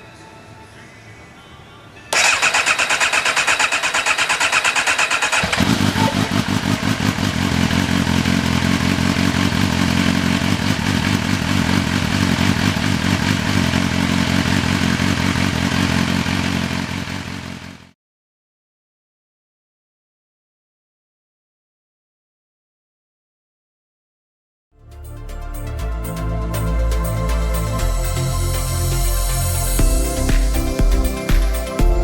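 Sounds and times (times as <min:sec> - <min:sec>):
engine cranking on starter: 0:02.1 - 0:17.8
motorcycle engine running: 0:02.2 - 0:17.9, 0:26.0 - 0:32.0.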